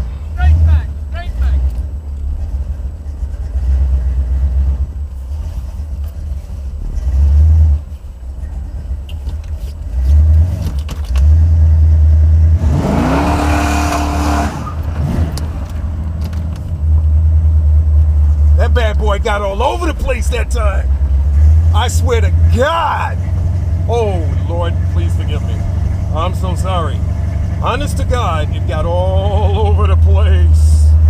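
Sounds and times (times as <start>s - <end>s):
car engine rumbling: 0.0s - 31.0s
tyres spinning and squealing: 12.8s - 31.0s.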